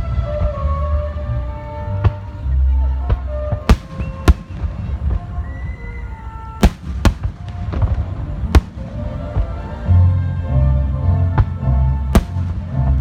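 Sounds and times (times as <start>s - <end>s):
low rumble of fireworks: 0.0s - 13.0s
firework shell bursts: 12.2s - 12.7s.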